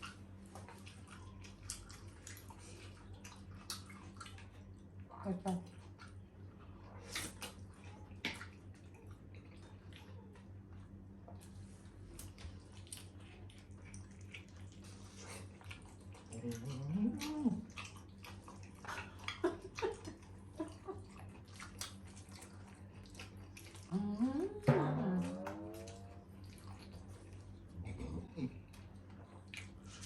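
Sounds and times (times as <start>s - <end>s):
steady low hum: 0.0s - 30.0s
wet chewing and slurping: 0.0s - 30.0s
person humming voice: 23.9s - 26.2s.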